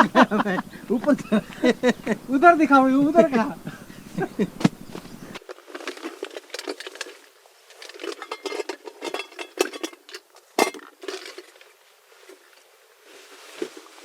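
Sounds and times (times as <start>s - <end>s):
metal pots clinking and rattling: 8.1s - 11.3s.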